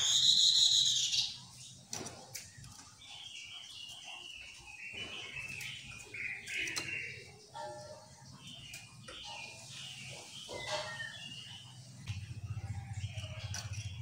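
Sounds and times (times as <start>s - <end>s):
bird harsh call: 0.0s - 1.4s
bird chattering notes: 0.0s - 1.7s, 2.9s - 7.6s.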